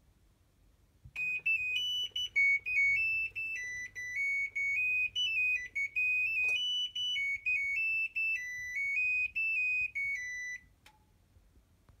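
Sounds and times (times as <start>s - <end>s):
washing machine buzzer melody: 1.2s - 10.6s.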